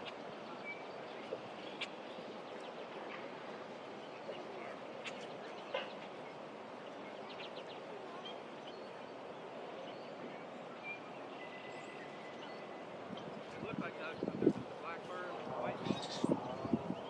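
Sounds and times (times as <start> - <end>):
wind through grass and trees: 0.0 - 17.0
faint bird chirps: 4.0 - 14.5.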